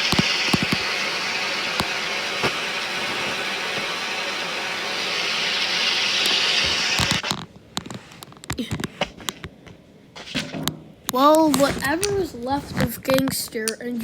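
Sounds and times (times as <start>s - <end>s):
fire extinguisher spraying: 0.0s - 7.3s.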